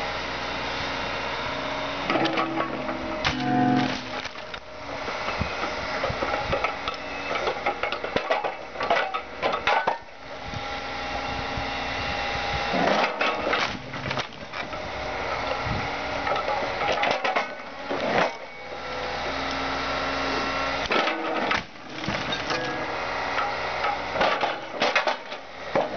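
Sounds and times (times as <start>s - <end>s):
excavator engine and hydraulics: 0.0s - 25.9s
metal crunching and creaking: 2.1s - 10.1s, 20.8s - 25.9s.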